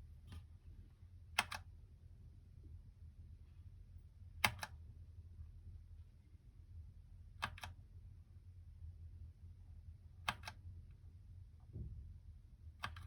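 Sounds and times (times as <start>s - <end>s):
mechanical keyboard key clicks: 1.4s - 1.6s, 4.4s - 4.8s, 7.4s - 7.8s, 10.3s - 10.6s, 12.8s - 13.0s.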